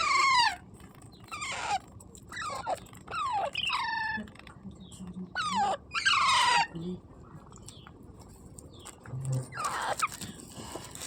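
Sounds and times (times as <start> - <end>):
parrot squawking: 0.0 - 0.7, 1.3 - 4.3, 5.3 - 6.8, 9.5 - 10.2.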